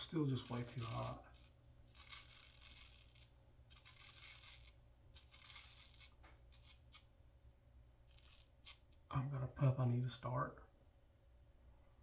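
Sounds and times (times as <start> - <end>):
razor scraping stubble: 0.0 - 7.1, 8.0 - 9.1.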